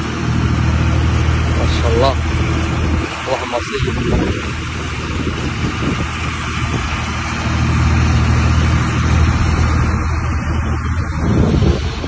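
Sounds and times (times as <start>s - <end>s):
broad rushing noise: 0.0s - 12.0s
vehicle engine low rumble: 0.0s - 12.0s.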